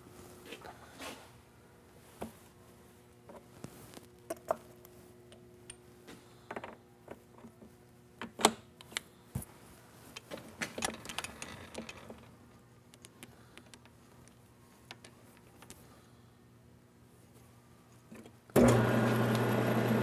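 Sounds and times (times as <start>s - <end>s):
faint steady hum: 0.0s - 20.0s
metal tooling clicks and knocks: 10.2s - 12.3s.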